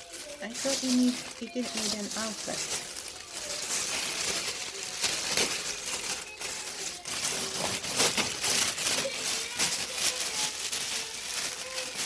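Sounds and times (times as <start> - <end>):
plastic packaging crinkling: 0.0 - 12.0.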